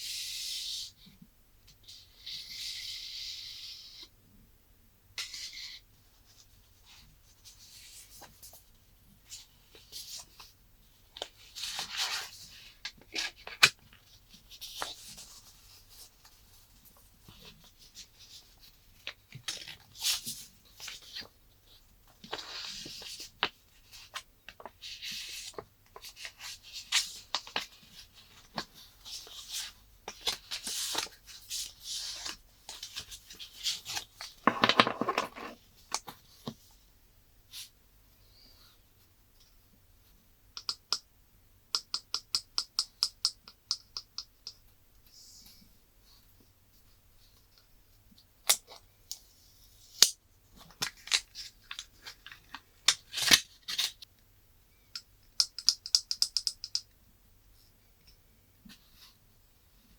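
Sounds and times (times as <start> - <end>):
small sharp clicks and taps: 40.6 - 41.1, 41.7 - 44.6, 54.9 - 56.9.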